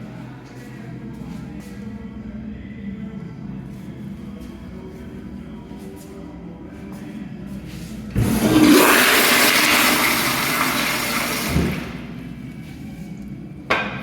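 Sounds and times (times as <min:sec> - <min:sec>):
toilet flushing: 0:08.1 - 0:12.2.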